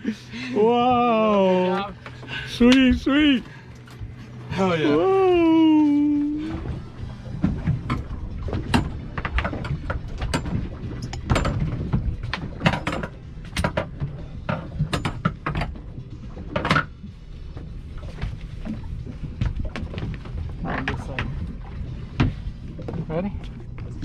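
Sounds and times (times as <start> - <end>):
steady low rumble: 0.0 - 24.0
knocks and clatter on boat deck: 6.6 - 24.0.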